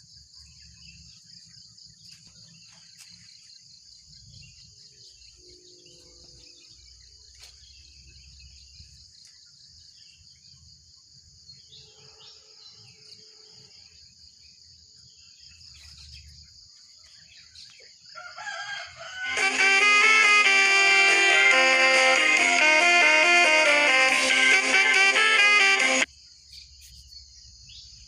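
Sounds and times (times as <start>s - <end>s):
insects droning: 0.0s - 19.4s
roosters crowing: 18.2s - 24.4s.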